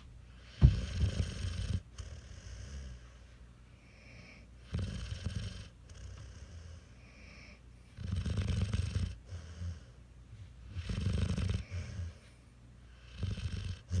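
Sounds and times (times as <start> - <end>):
puppy snoring: 0.4 - 3.2, 3.8 - 10.0, 10.7 - 12.3, 12.9 - 14.0
soft breath: 11.5 - 13.2.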